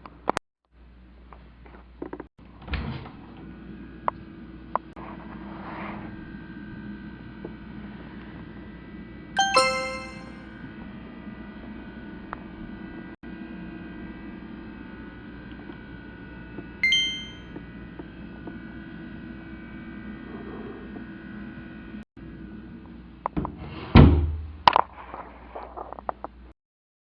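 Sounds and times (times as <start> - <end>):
bell-like metallic dings: 9.4 - 10.4, 16.8 - 17.4.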